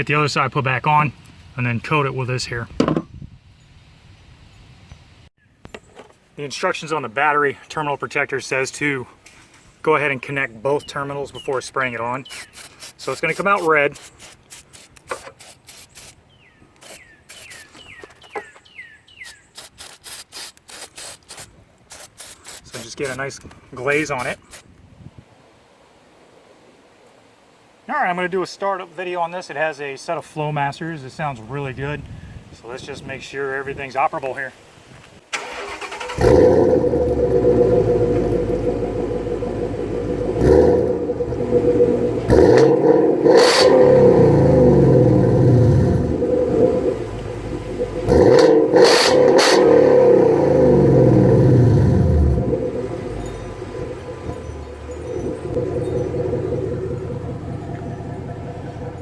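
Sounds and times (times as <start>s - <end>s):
bird chirping: 9.5s - 24.6s, 52.7s - 59.0s
aerosol spray hissing: 12.2s - 16.1s, 16.8s - 17.7s, 19.2s - 23.2s
engine revving: 19.6s - 24.6s, 35.4s - 59.0s
car engine starting and idling: 35.3s - 59.0s.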